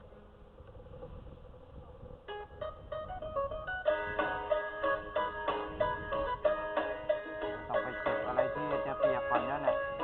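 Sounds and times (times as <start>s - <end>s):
plucked string background music: 2.3s - 10.0s.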